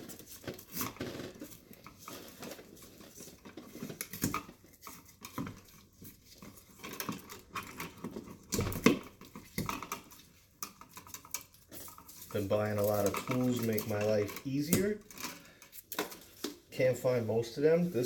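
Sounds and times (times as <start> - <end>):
electrical wire being handled: 0.0 - 18.0
hand tools clinking: 9.6 - 16.2.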